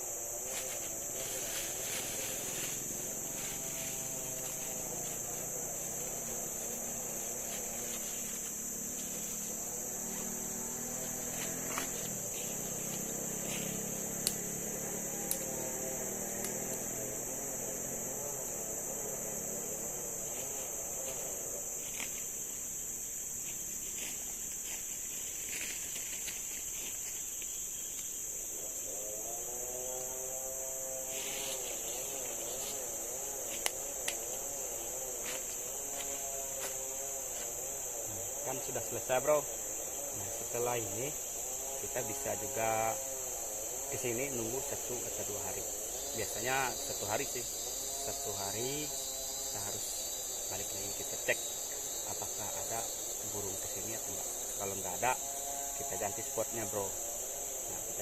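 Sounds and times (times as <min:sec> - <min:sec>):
forest insects droning: 0:00.0 - 0:58.0.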